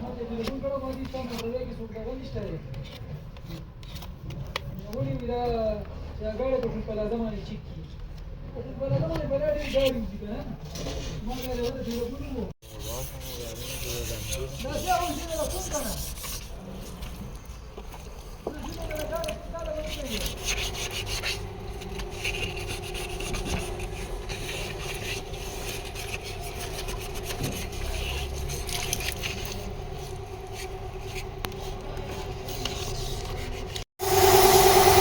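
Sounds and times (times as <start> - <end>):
sanding strokes on car bodywork: 11.4 - 16.9, 19.8 - 31.2
steady machine hum: 34.0 - 35.0.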